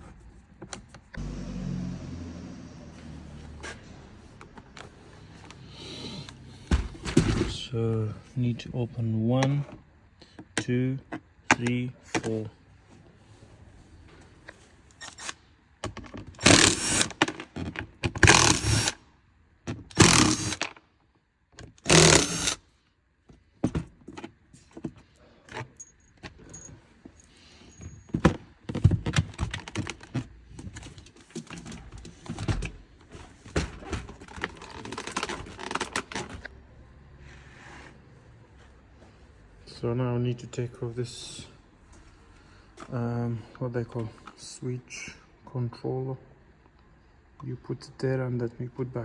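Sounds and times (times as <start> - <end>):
loud rattling bursts: 20.0 - 20.6.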